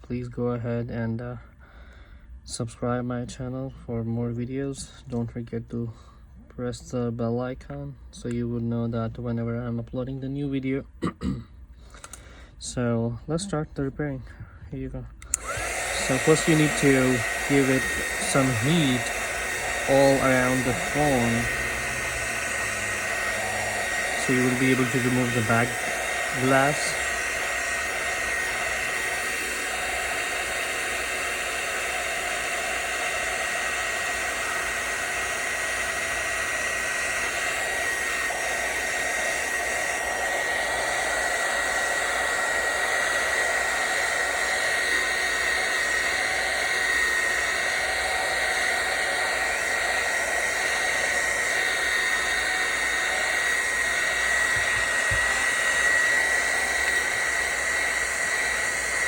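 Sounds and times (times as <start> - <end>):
hot-air blower whistling: 15.2 - 59.0.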